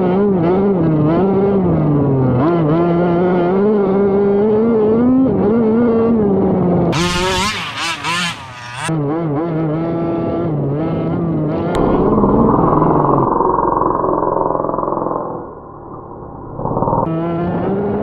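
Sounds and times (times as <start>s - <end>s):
small two-stroke engine revving: 6.5s - 13.0s.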